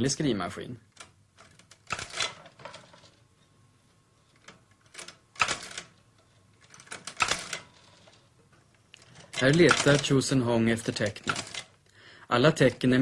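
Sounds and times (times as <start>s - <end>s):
typewriter clacking: 1.0s - 3.0s, 4.5s - 6.0s, 6.6s - 8.1s, 9.0s - 11.7s.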